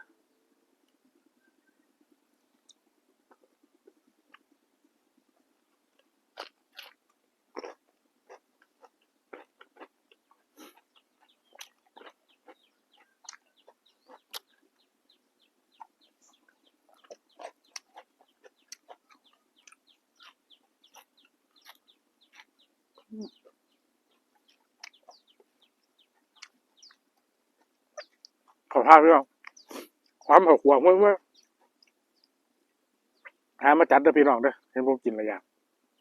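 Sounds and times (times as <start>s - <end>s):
crunching raw vegetables: 5.7s - 15.0s, 15.8s - 23.6s.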